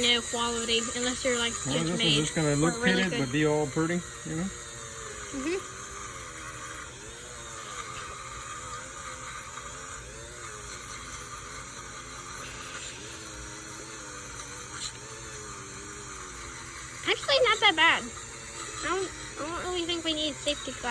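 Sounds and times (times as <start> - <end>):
power tool wire brush whirring: 0.0 - 20.9.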